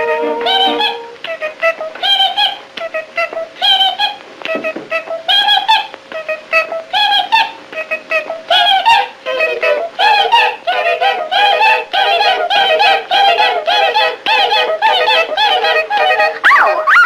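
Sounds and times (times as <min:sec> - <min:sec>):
cartoon warbling calls: 0:16.4 - 0:17.0.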